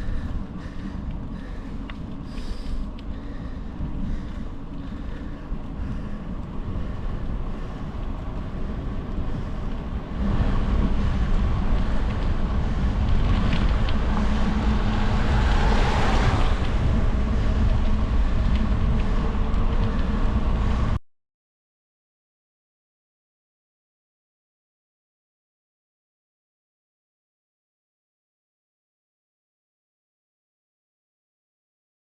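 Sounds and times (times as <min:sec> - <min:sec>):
bike tyre noise: 0:00.0 - 0:21.0
wind rushing over microphone: 0:00.0 - 0:21.0.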